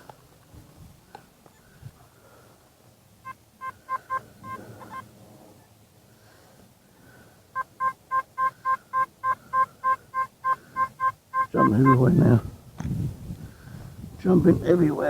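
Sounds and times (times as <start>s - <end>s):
metal detector beeping: 3.2s - 5.0s, 7.6s - 12.2s.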